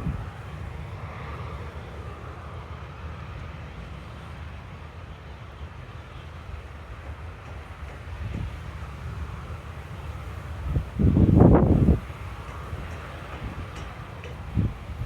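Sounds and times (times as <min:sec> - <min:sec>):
distant jet engines rumbling: 0:00.0 - 0:15.0.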